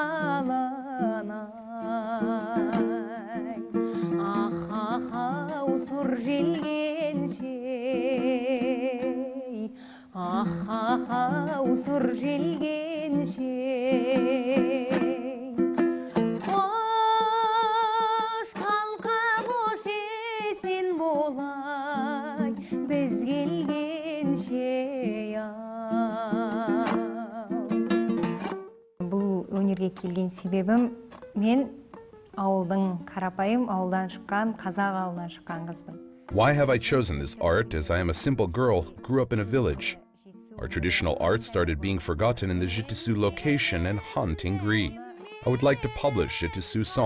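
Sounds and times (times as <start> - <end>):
woman singing with vibrato: 0.0 - 15.6, 16.4 - 27.8, 43.3 - 47.0
plucked string accompaniment: 0.0 - 47.0.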